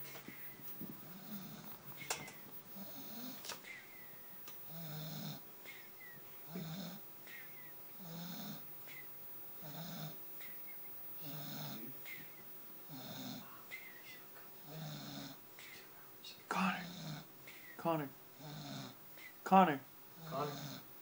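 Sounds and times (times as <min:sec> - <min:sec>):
man snoring: 0:01.0 - 0:01.8, 0:02.7 - 0:03.4, 0:04.7 - 0:05.4, 0:06.5 - 0:07.0, 0:08.0 - 0:08.6, 0:09.6 - 0:10.2, 0:11.2 - 0:12.0, 0:12.9 - 0:13.5, 0:14.6 - 0:15.4, 0:16.5 - 0:17.3, 0:18.4 - 0:19.0, 0:20.2 - 0:20.9.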